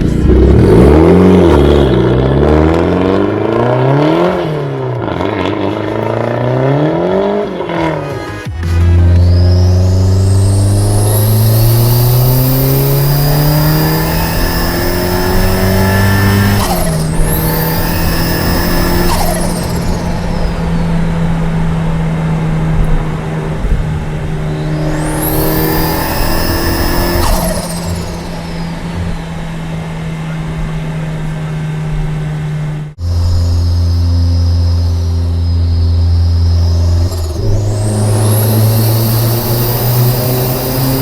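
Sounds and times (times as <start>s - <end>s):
car engine accelerating hard: 0.0s - 41.0s
turbo whistle: 7.8s - 21.4s, 24.4s - 29.5s, 33.0s - 41.0s.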